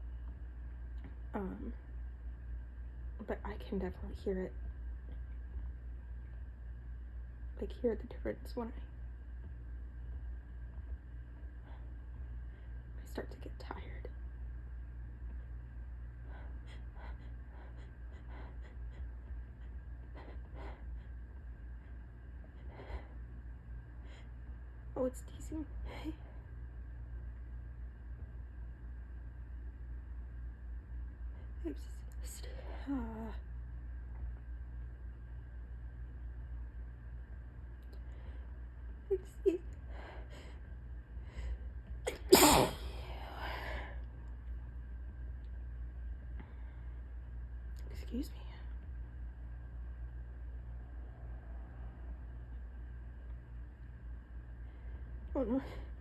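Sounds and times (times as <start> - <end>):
loud sneeze: 42.1 - 43.0.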